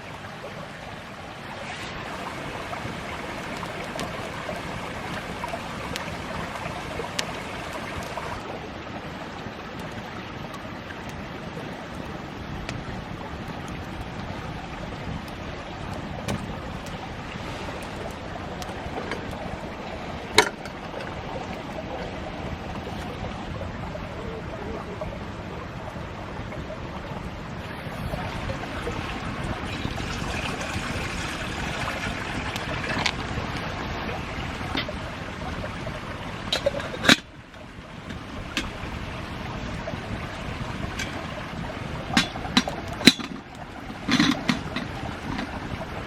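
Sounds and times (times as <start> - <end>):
campfire crackling: 1.0 - 23.6, 27.5 - 46.0
campfire rushing hiss: 1.4 - 8.6, 27.6 - 37.2
fire snaps and pops: 3.4 - 8.4.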